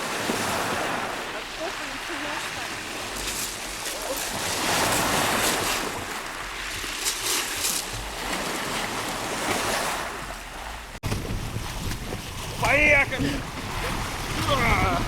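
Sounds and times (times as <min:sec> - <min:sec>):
waves breaking: 0:00.0 - 0:15.0
wind buffeting microphone: 0:07.8 - 0:15.0.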